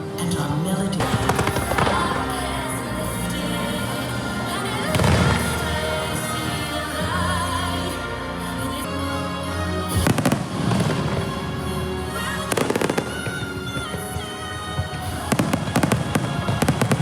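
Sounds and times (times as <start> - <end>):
fireworks banging and crackling: 1.0 - 3.0, 10.0 - 11.5, 12.4 - 17.0
show music: 1.0 - 17.0.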